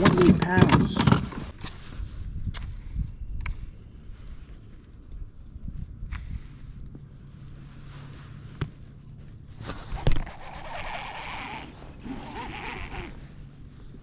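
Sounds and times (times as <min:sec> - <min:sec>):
fishing reel whirring: 0:10.0 - 0:13.2.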